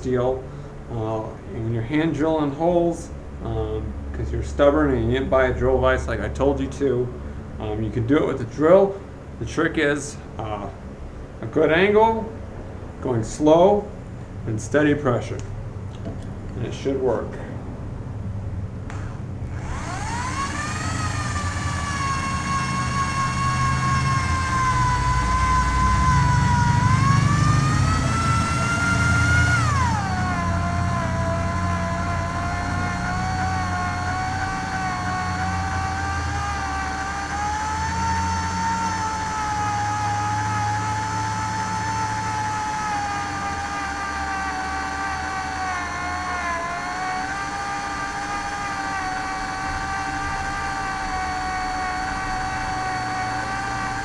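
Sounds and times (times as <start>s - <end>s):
electric drill boring steel: 18.9s - 54.0s.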